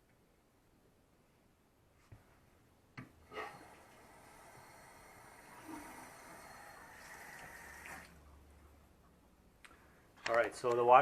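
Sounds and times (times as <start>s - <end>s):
water hissing through pipe: 3.2s - 8.3s.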